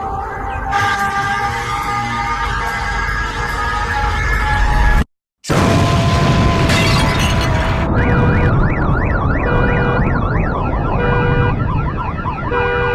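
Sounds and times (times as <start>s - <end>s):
steady siren tone: 0.0s - 12.9s
wailing emergency sirens: 0.0s - 12.9s
loud rumbling blast: 5.4s - 12.0s.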